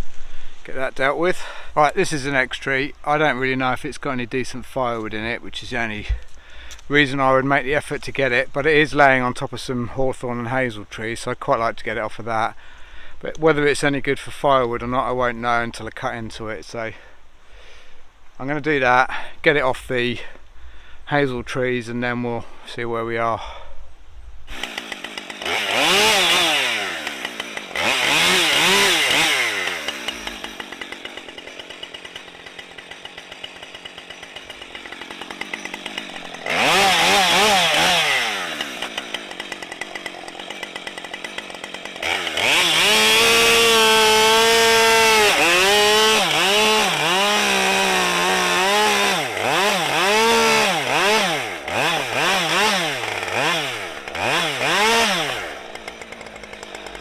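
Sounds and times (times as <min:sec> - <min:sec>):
chainsaw revving and cutting: 0:24.5 - 0:57.0.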